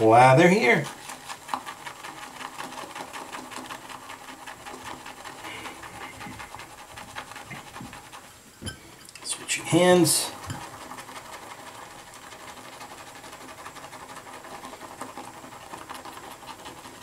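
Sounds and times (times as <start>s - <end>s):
shaving brush whipping lather: 0.0s - 8.4s, 9.2s - 17.0s.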